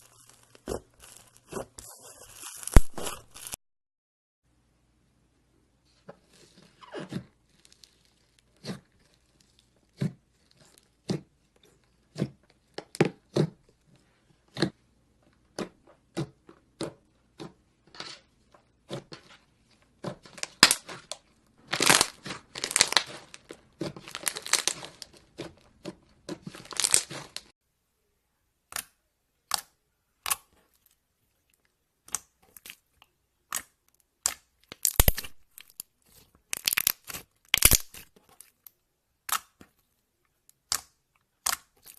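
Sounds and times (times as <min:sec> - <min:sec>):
slime squishing and popping: 0:02.4 - 0:03.6, 0:20.2 - 0:27.4, 0:33.5 - 0:35.8, 0:36.5 - 0:38.6, 0:40.5 - 0:41.9.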